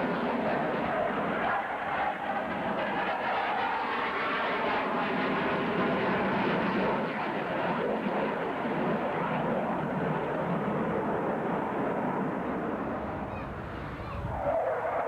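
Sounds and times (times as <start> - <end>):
airplane flying by: 11.8 - 15.0.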